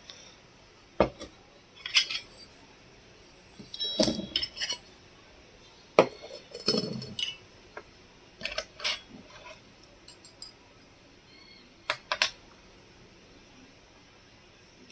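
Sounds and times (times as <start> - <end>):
dishes and utensils clinking: 1.0 - 2.5, 3.6 - 4.9, 6.0 - 7.4, 8.4 - 10.6.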